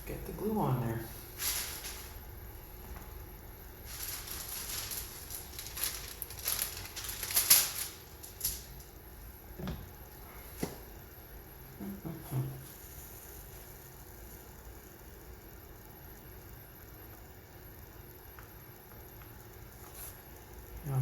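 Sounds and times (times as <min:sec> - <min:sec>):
soft scrapes and rubs: 0:19.8 - 0:20.2.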